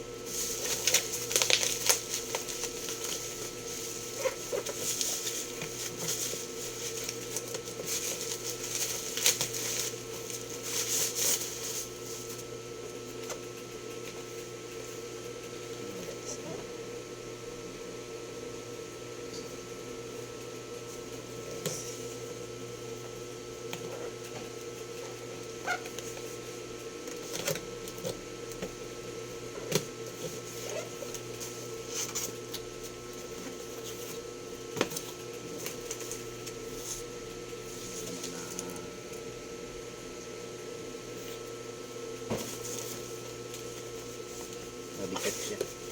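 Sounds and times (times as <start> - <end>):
electrical hum: 0.0 - 45.9
packaging crinkling and rustling: 0.3 - 12.5.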